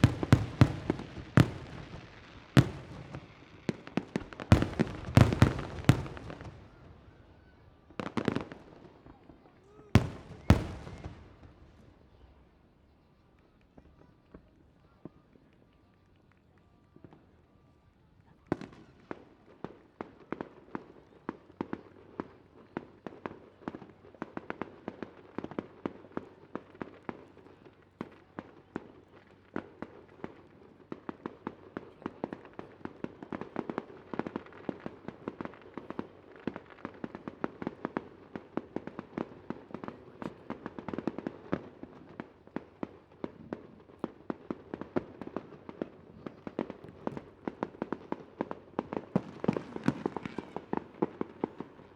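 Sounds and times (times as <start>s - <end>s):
fireworks bangs and crackles: 0.0s - 12.7s, 18.2s - 51.9s.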